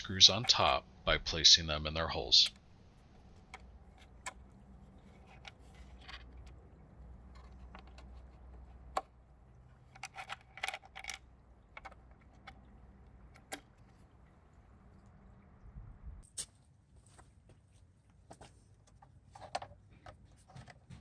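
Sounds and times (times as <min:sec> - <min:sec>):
small metal screws clicking: 0:09.7 - 0:14.6.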